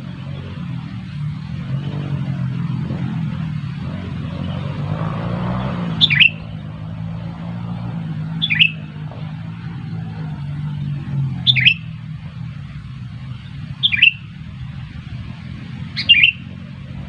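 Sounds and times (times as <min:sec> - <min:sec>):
bulbul chirping calls: 0:00.0 - 0:07.2, 0:08.0 - 0:10.3, 0:11.1 - 0:12.2, 0:13.3 - 0:14.6, 0:15.8 - 0:16.7.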